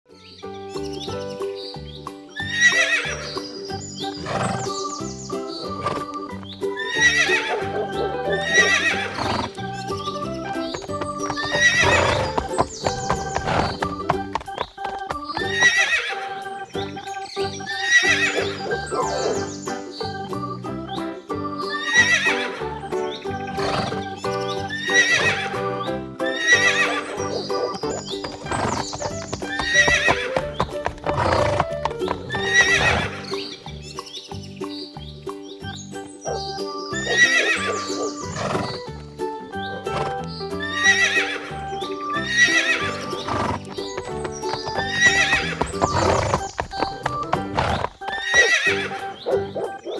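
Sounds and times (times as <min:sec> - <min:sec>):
light background music: 0:00.1 - 0:49.9
horse whinnying: 0:04.1 - 0:04.9, 0:05.7 - 0:16.3, 0:23.4 - 0:24.2, 0:24.8 - 0:25.6, 0:26.3 - 0:33.6, 0:37.1 - 0:38.9, 0:39.7 - 0:49.1.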